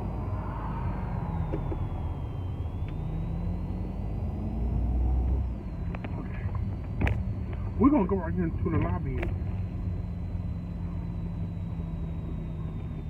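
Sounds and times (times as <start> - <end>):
car engine drone: 0.0 - 13.0
road rumble: 0.0 - 13.0.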